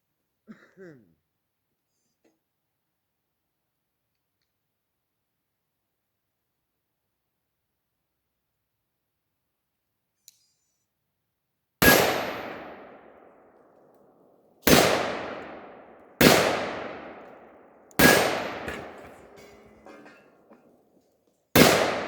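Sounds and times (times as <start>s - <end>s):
rifle shots with echo: 11.8s - 13.5s, 14.6s - 20.2s, 21.6s - 22.0s.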